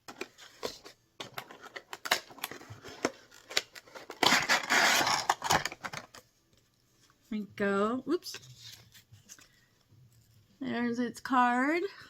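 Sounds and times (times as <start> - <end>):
scraping rustle of packaging: 0.3 - 6.0
packaging crackles and clicks: 1.2 - 6.2.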